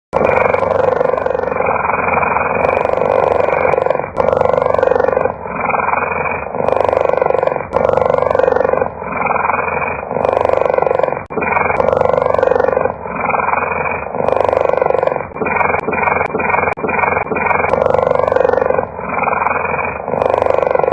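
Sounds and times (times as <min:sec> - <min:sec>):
cheetah purring: 0:00.1 - 0:20.9.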